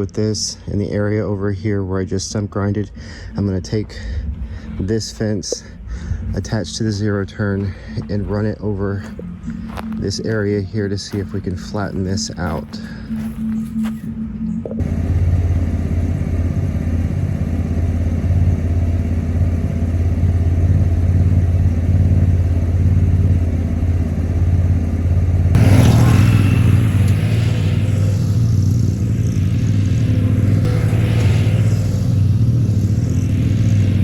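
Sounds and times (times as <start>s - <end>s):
mower engine running: 0.0s - 14.1s, 14.8s - 34.0s.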